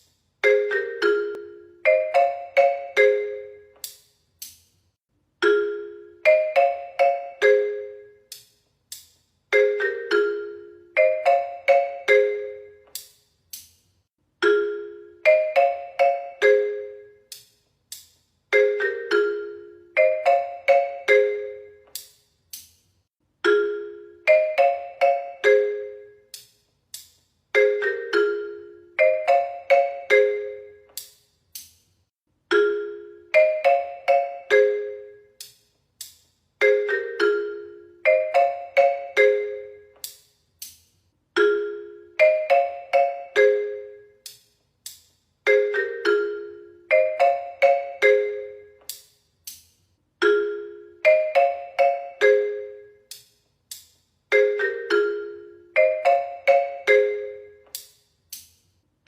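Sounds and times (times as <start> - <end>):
phone ringtone mallet melody: 0.4 - 3.8, 5.4 - 8.3, 9.5 - 12.9, 14.4 - 17.3, 18.5 - 22.0, 23.4 - 26.3, 27.6 - 30.9, 32.5 - 35.4, 36.6 - 40.0, 41.4 - 44.2, 45.5 - 48.9, 50.2 - 53.1, 54.3 - 57.7.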